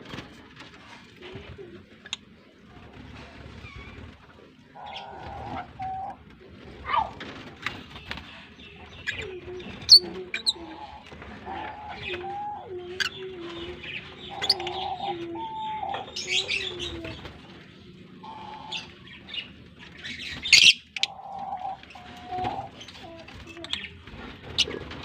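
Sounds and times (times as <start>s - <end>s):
low wavering cooing: 4.8s - 7.2s, 8.9s - 17.4s, 18.0s - 19.1s, 20.6s - 23.9s
lovebirds chirping: 7.6s - 17.3s.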